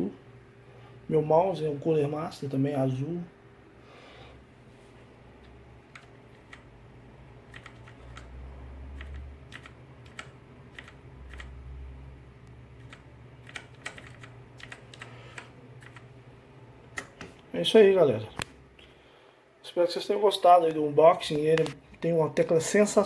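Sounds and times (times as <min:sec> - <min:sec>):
steady low hum: 0:00.0 - 0:23.0
mechanical keyboard keys clicking: 0:05.9 - 0:06.6, 0:07.5 - 0:08.3, 0:09.0 - 0:11.5, 0:12.8 - 0:16.0.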